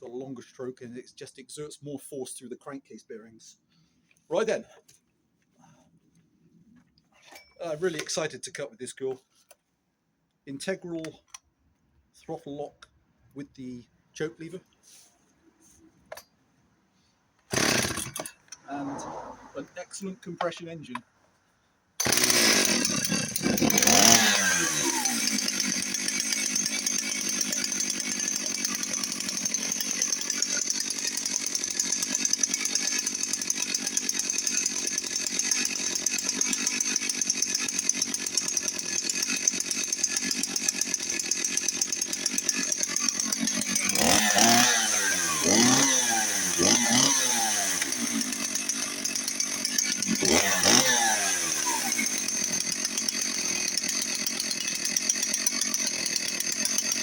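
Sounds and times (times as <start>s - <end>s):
chainsaw idling and revving: 17.5s - 19.7s, 22.0s - 57.0s.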